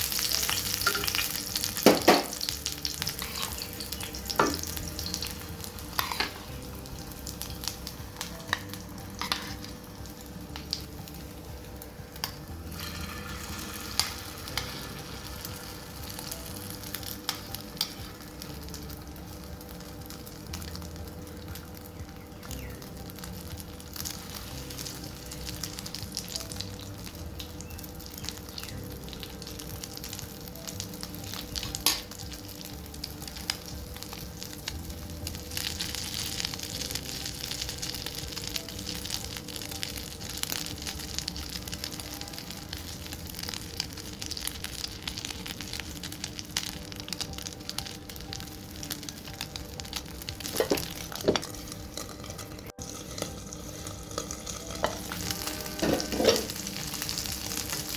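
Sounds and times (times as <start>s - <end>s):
food sizzling in a pan: 0.0s - 57.9s.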